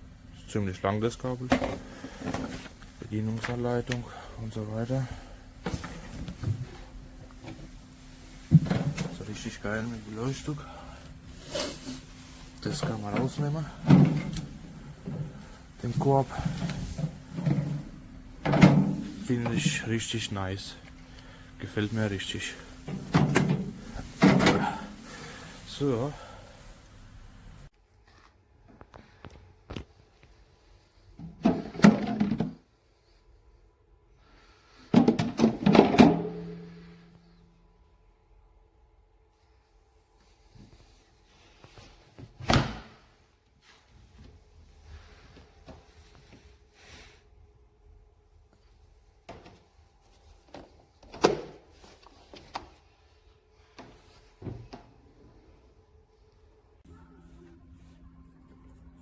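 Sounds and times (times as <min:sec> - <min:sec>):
knocks and clunks of handling: 0:01.4 - 0:04.2, 0:05.6 - 0:07.8, 0:08.4 - 0:09.4, 0:12.7 - 0:19.8, 0:22.7 - 0:25.0, 0:31.2 - 0:32.7, 0:34.9 - 0:36.9, 0:50.4 - 0:52.8
plastic parts knocking and clattering: 0:01.5 - 0:04.0, 0:16.4 - 0:19.8, 0:31.2 - 0:32.6, 0:34.9 - 0:36.6
faint steady hum: 0:43.3 - 0:59.0.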